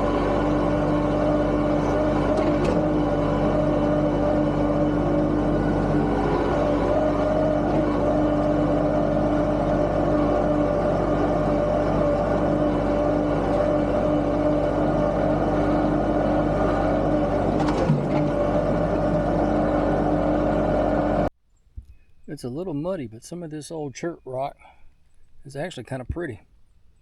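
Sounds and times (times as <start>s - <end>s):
tractor engine running: 0.0s - 27.0s.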